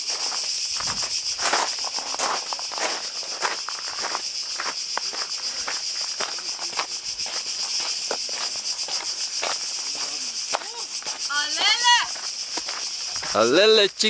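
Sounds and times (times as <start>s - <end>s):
cicadas chorus: 0.0s - 14.0s
footsteps: 0.0s - 14.0s.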